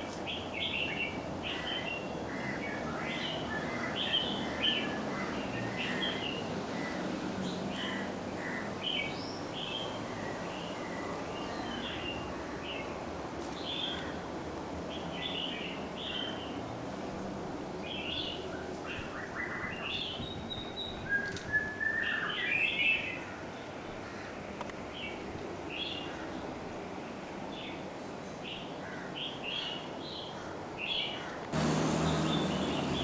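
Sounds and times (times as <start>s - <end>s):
birds chirping: 28.5s - 33.0s.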